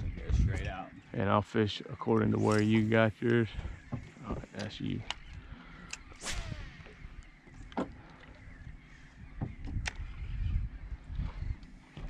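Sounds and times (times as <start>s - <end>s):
small reel and tackle clicks: 4.5s - 6.1s, 9.8s - 10.2s
fishing line whirring off reel: 5.8s - 7.6s
fishing rod swishing through air: 5.9s - 7.0s.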